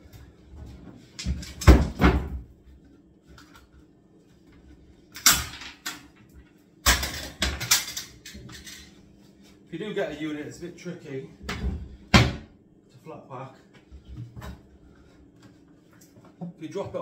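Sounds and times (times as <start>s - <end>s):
cabinet panels banging and clattering: 1.2s - 2.5s, 11.5s - 12.5s.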